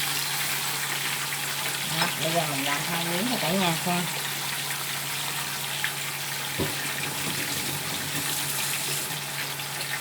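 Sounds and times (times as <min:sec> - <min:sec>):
tofu sizzling in oil: 0:00.0 - 0:07.2
knock: 0:06.6 - 0:08.4.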